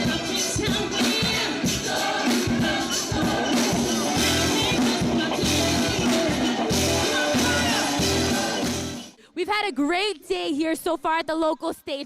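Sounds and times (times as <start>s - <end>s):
music with steady beat: 0.0s - 9.1s
person singing: 3.1s - 9.0s.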